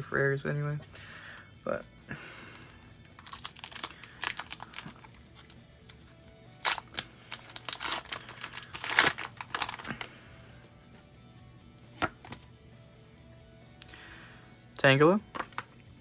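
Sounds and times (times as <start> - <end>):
cards rustling: 3.0 - 10.8, 11.9 - 12.5
foil wrapper crinkling: 3.2 - 5.6, 6.6 - 10.1.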